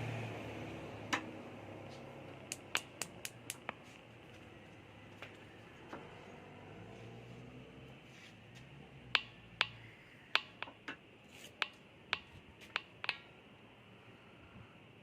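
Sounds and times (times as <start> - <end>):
sharp clicks: 2.5 - 3.8.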